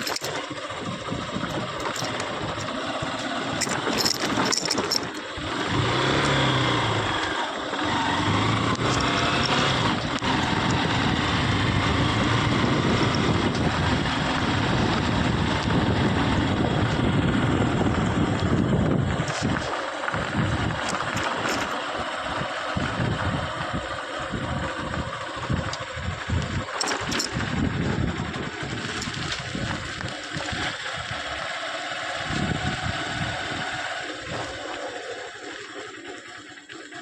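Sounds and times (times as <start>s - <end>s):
diesel engine running: 0.0s - 37.0s.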